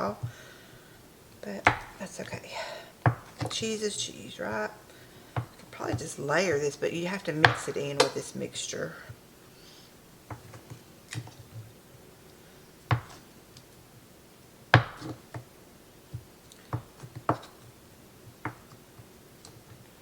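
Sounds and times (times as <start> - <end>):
knife chopping cheese: 1.6 - 2.0, 3.0 - 3.8, 5.3 - 6.6, 7.4 - 8.1, 12.9 - 13.3, 14.8 - 15.5, 16.1 - 19.1.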